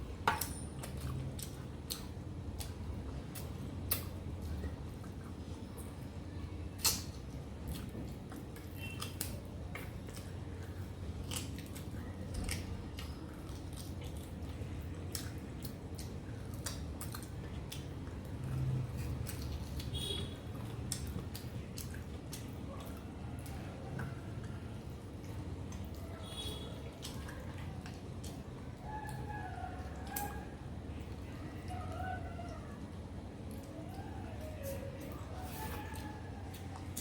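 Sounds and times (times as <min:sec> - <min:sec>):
person chewing food: 0:00.0 - 0:31.2, 0:32.8 - 0:37.0
steady low hum: 0:00.0 - 0:37.0
wet mouth clicks and smacks: 0:06.8 - 0:19.9.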